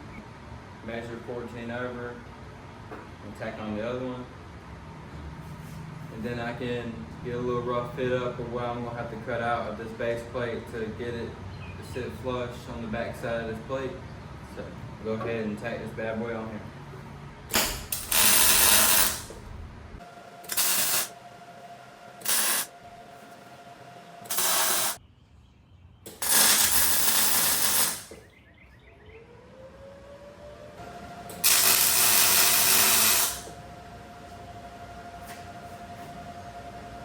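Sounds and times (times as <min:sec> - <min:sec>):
welding arc crackling hiss: 0:17.5 - 0:21.2, 0:22.2 - 0:22.7, 0:24.2 - 0:25.0, 0:26.1 - 0:28.2, 0:31.3 - 0:33.6.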